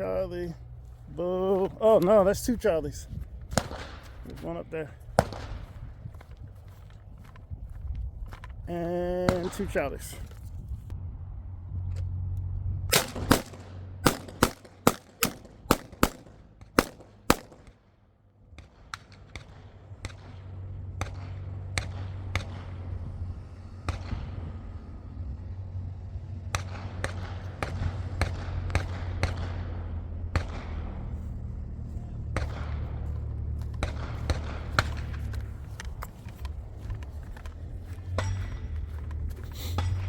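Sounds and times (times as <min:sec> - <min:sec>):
faint distant shots: 0:00.0 - 0:07.4, 0:12.9 - 0:17.9, 0:18.5 - 0:40.0
steady low rumble: 0:00.0 - 0:40.0
gunshots: 0:03.5 - 0:05.9, 0:09.2 - 0:10.2, 0:12.9 - 0:17.8, 0:26.5 - 0:31.3, 0:32.2 - 0:35.8.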